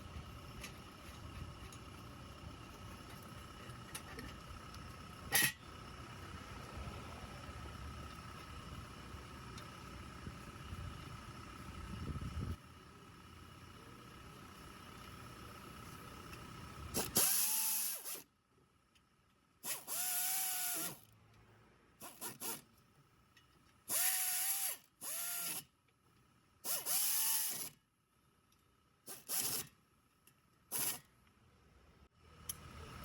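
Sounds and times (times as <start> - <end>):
power tool motor whining: 16.9 - 18.2, 19.6 - 21.1, 23.9 - 25.7, 26.6 - 27.8.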